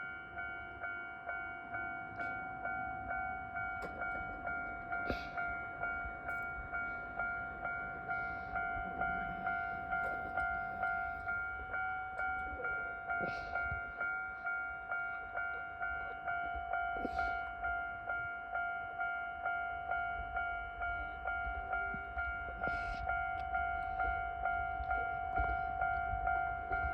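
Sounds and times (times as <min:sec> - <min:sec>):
level crossing warning bell ringing: 0:00.0 - 0:26.9.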